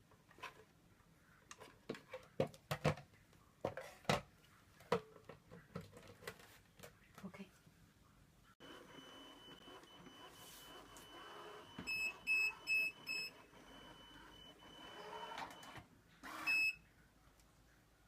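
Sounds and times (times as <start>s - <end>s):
robot vacuum electronic beeps: 8.6s - 16.8s.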